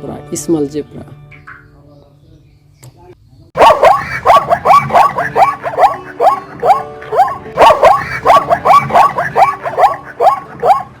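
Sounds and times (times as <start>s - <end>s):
zebra barking: 3.6s - 11.0s.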